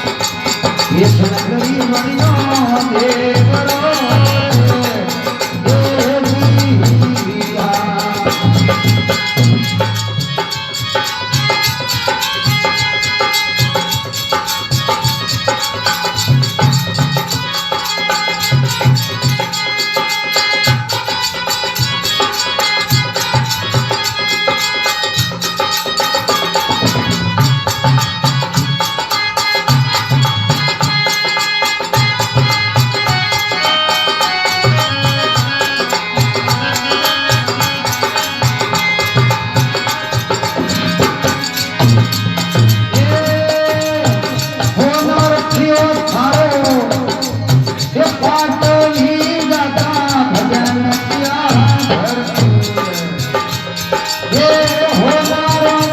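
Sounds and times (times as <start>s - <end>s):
hand drum rhythm: 0.0s - 55.9s
sustained melodic tones: 21.1s - 55.9s.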